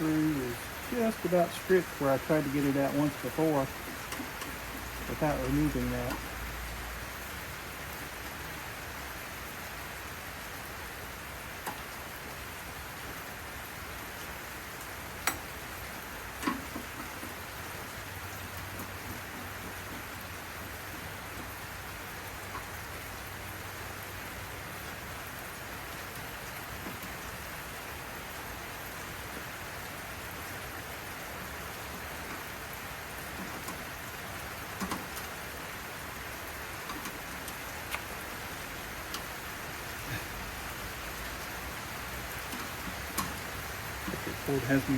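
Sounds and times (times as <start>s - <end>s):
heavy rain pouring: 0.0s - 44.9s
sharp clicks and knocks: 3.7s - 6.4s, 16.4s - 17.4s, 34.8s - 35.4s.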